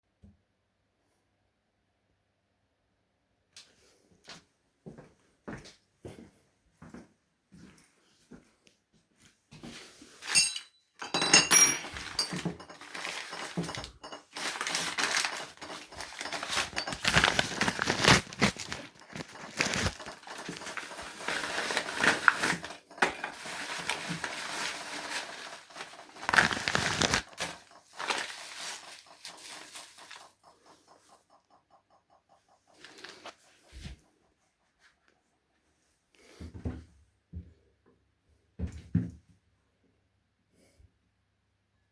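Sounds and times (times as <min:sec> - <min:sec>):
plastic packaging crinkling: 0:12.2 - 0:30.3.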